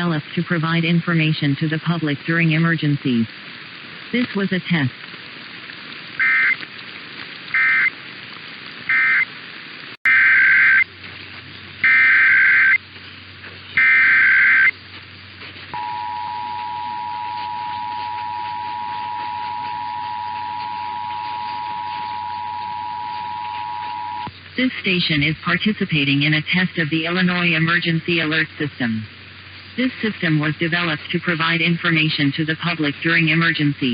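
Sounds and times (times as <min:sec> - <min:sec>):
radio static: 0:00.0 - 0:33.9
emergency alert data bursts: 0:06.2 - 0:06.6, 0:07.5 - 0:08.0, 0:08.9 - 0:09.3, 0:10.1 - 0:10.9, 0:11.8 - 0:12.8, 0:13.8 - 0:14.8, 0:15.8 - 0:28.4
two-tone attention signal: 0:15.8 - 0:24.3.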